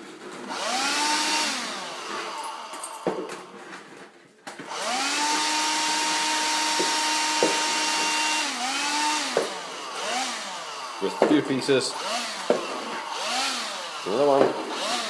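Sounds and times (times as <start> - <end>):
vacuum cleaner motor whining: 0.0 - 15.0.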